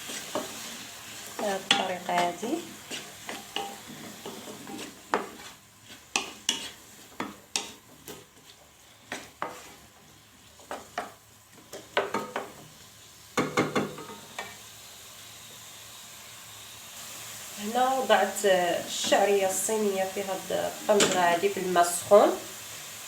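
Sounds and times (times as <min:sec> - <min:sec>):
utensil scraping a pot: 0:00.0 - 0:10.9
vegetables sizzling in oil: 0:00.0 - 0:23.0.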